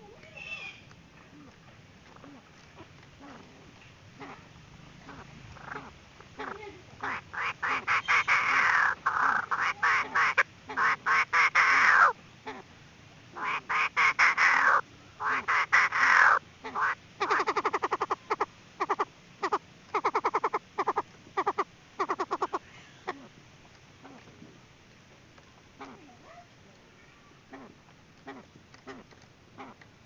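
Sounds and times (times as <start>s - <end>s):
francolin calling: 2.0s - 12.7s, 13.4s - 23.4s.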